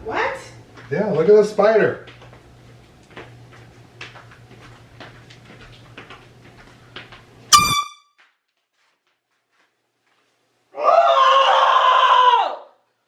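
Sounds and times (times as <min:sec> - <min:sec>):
air horn blast: 0:07.5 - 0:08.0.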